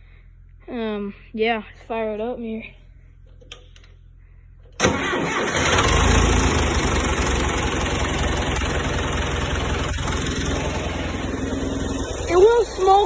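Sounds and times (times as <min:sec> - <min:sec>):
diesel tractor engine starting and idling: 0:04.7 - 0:13.0.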